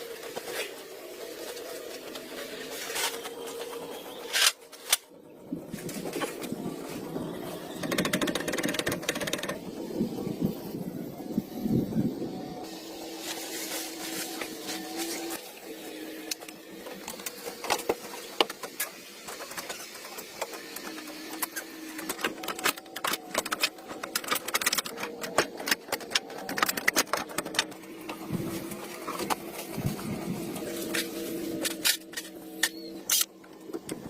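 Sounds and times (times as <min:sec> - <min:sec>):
mechanical clicking and rattling: 0:07.6 - 0:10.0, 0:16.3 - 0:30.0.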